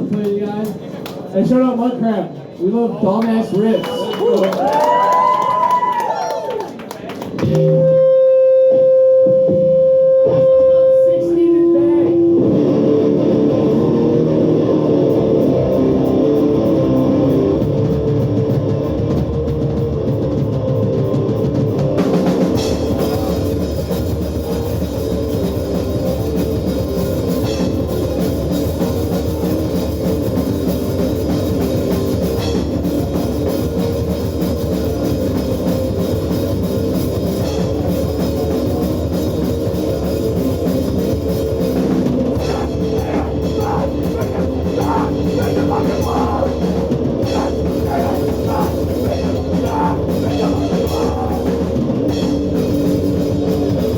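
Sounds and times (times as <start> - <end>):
punk band playing loud: 4.0 - 10.9, 12.2 - 53.9
distorted electric guitar riff: 11.9 - 53.9
drum kit: 12.6 - 53.9.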